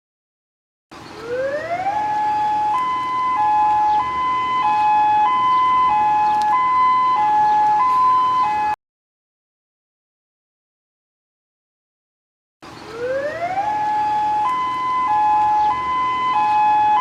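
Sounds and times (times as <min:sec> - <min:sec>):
electronic two-tone siren: 0:01.2 - 0:08.8, 0:12.9 - 0:17.0.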